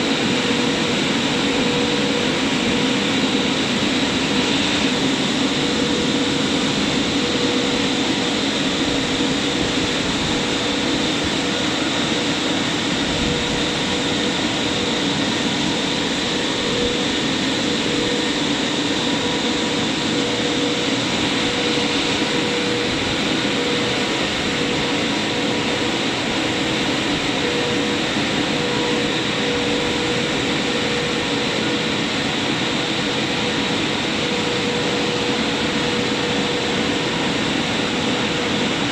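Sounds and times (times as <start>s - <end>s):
car wash machinery rushing: 0.0s - 38.9s
constant machinery hum: 0.0s - 38.9s.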